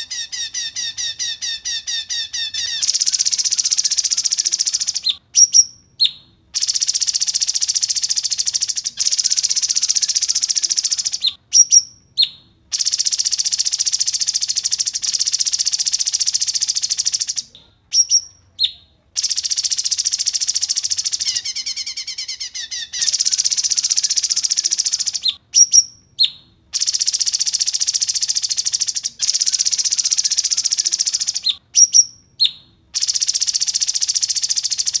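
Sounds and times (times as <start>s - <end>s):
songbird rapid trilling: 0.0s - 5.7s
sharp whistled bird notes: 0.0s - 35.0s.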